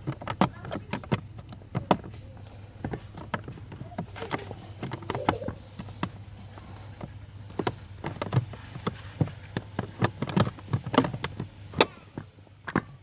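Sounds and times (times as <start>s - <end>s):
plastic clicks and knocks: 0.0s - 13.0s.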